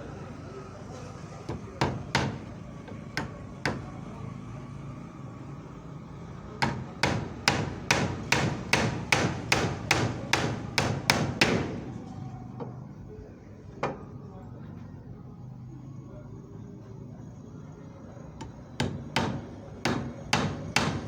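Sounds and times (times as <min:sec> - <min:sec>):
hammer striking nails into wood: 0:01.5 - 0:03.9, 0:06.6 - 0:11.8, 0:18.8 - 0:21.0.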